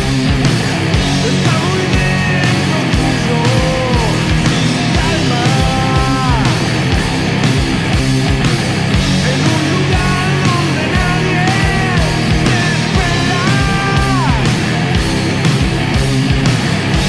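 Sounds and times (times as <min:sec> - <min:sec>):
heavy rock song: 0:00.0 - 0:17.0.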